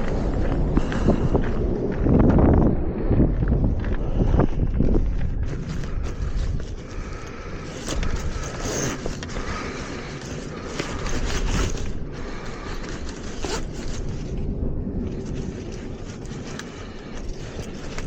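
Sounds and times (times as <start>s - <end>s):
low rumble: 0.0s - 18.0s
zipper-like scraping strokes: 5.5s - 14.4s.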